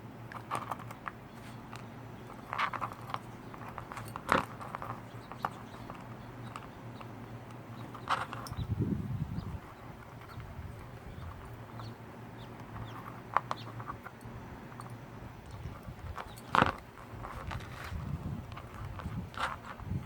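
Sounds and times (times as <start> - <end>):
faint steady hum: 0.0 - 20.0
small tools clicking and scraping: 0.3 - 8.7, 10.0 - 20.0.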